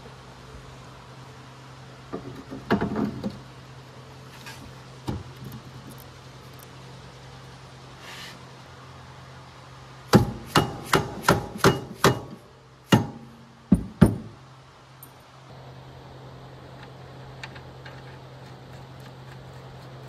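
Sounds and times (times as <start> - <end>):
hammer striking metal: 10.1 - 14.4.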